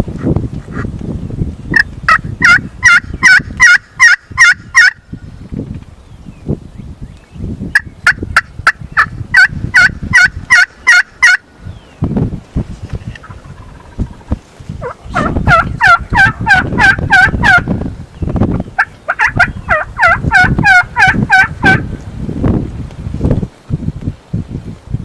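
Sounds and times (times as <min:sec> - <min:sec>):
low wind or rustling: 0:00.0 - 0:25.0
turkey yelping: 0:09.0 - 0:11.4, 0:14.8 - 0:17.6, 0:18.8 - 0:21.8.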